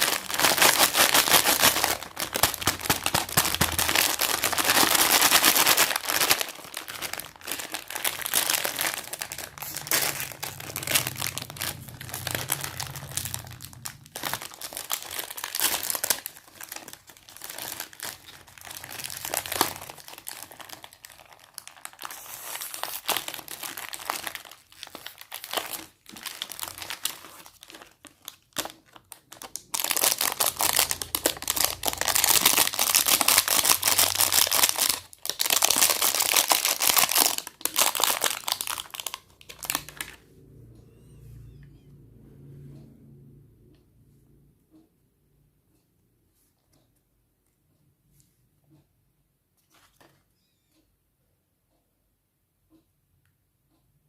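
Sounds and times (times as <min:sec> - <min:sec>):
plastic wrapper crinkling: 0:00.0 - 0:40.2.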